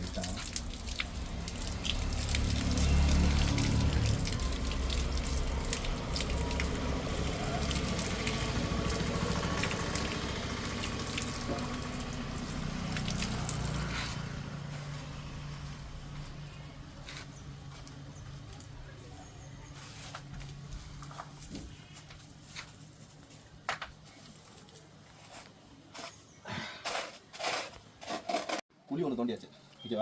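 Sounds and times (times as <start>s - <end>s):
water splashing and dripping: 0.0s - 18.9s.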